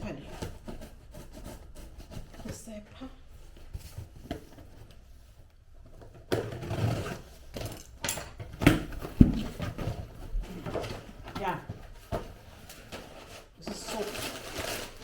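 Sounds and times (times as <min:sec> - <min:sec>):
packaging rustling and rubbing: 0:09.4 - 0:15.0.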